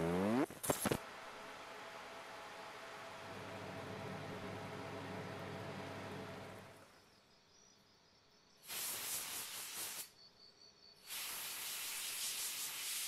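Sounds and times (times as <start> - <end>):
hissing spray: 8.6 - 10.1, 11.1 - 13.0.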